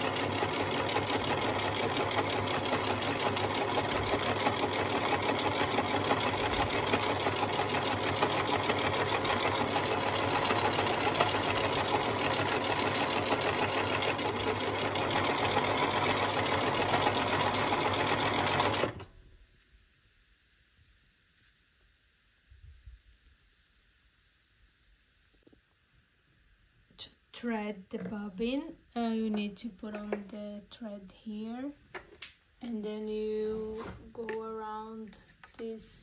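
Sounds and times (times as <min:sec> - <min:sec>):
sewing machine running: 0:00.0 - 0:19.1.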